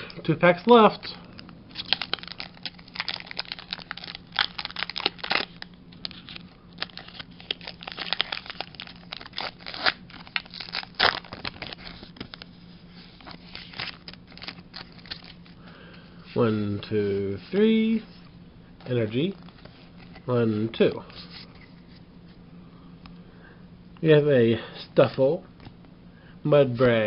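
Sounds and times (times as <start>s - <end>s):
foil wrapper tearing and crinkling: 1.7s - 15.6s
cards being handled: 1.7s - 22.0s.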